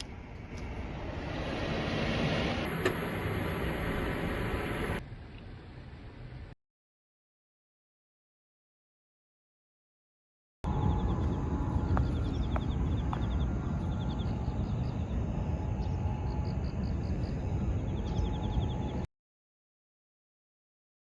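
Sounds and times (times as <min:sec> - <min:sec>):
low rumble of wind or traffic: 0:00.0 - 0:06.6, 0:10.6 - 0:19.1
high chirping trills: 0:10.7 - 0:19.1.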